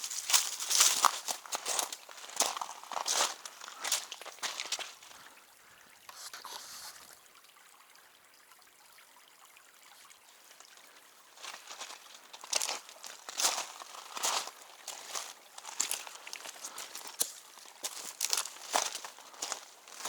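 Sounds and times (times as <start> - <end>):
footsteps crunching on gravel: 0.0 - 5.0, 11.4 - 20.0.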